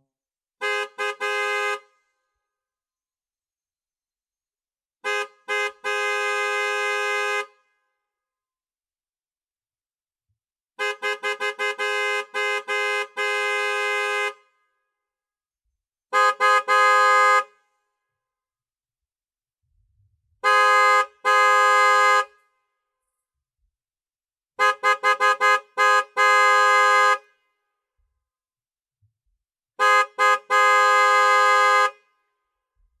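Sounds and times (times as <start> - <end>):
car horn honking: 0.6 - 2.1, 5.0 - 7.8, 10.8 - 14.7, 16.1 - 17.8, 20.4 - 22.6, 24.6 - 27.6, 29.8 - 32.3.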